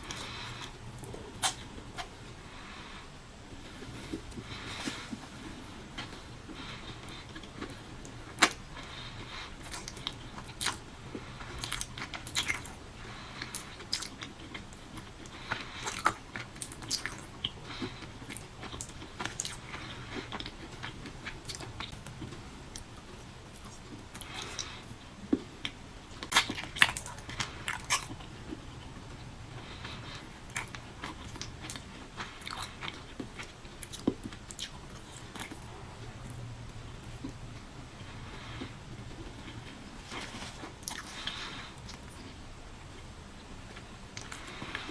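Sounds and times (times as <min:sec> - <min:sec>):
mouth clicks and smacks: 0:00.0 - 0:02.1, 0:30.5 - 0:37.4
person chewing fruit: 0:00.0 - 0:44.9.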